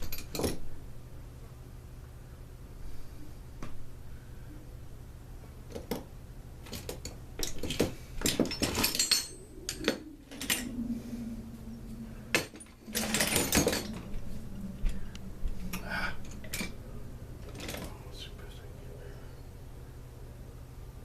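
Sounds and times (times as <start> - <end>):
steady low hum: 0.0 - 21.0
metal parts clinking on workbench: 6.7 - 10.7.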